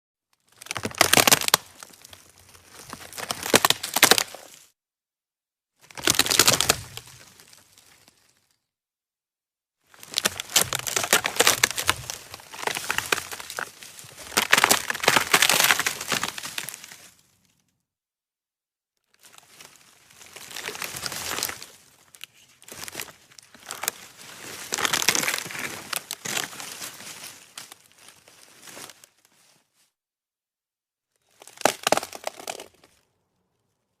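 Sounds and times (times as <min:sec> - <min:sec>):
dry wood snapping and crackling: 0:00.5 - 0:04.6, 0:05.9 - 0:08.0, 0:10.0 - 0:17.1, 0:19.2 - 0:27.8, 0:31.3 - 0:33.0.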